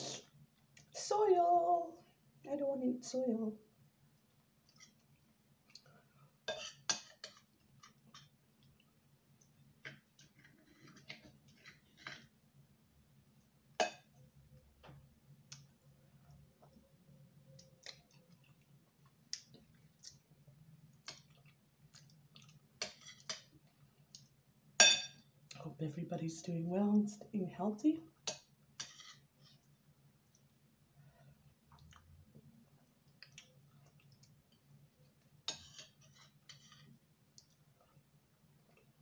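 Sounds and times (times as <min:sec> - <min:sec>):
mouth clicks and chewing: 0:17.5 - 0:20.3.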